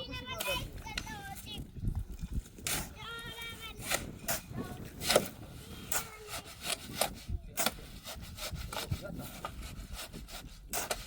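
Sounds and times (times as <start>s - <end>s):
hand tool scraping strokes: 2.6s - 11.0s.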